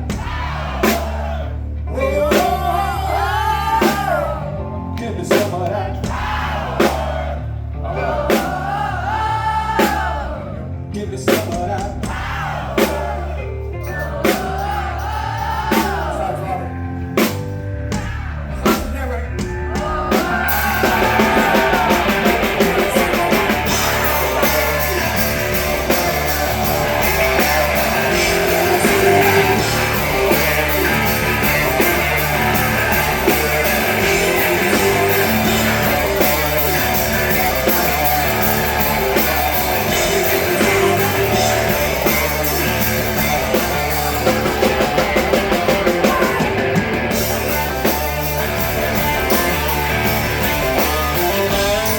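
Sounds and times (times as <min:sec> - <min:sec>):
live rock band playing: 0:00.0 - 0:51.9
drum hits: 0:17.3 - 0:51.9.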